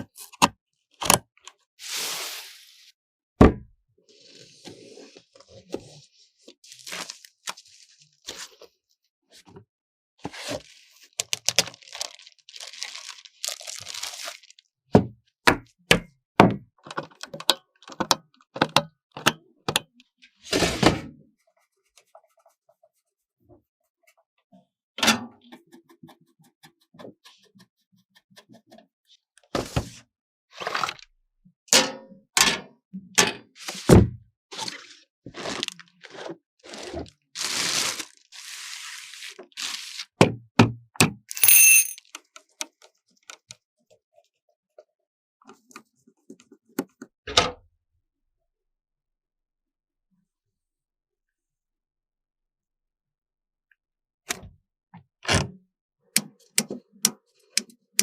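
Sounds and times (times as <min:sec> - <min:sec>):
packaging rustling: 0:11.2 - 0:14.6.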